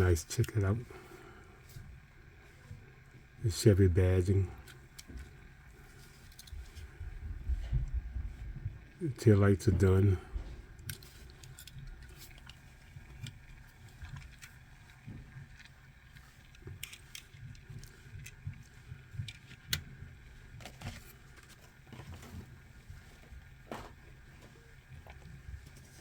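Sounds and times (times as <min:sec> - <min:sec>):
low rumble: 0:07.0 - 0:10.8.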